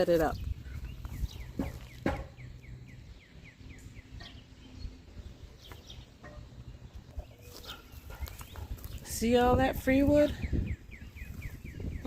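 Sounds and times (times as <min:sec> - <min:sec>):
sharp knocks: 0:01.6 - 0:02.4.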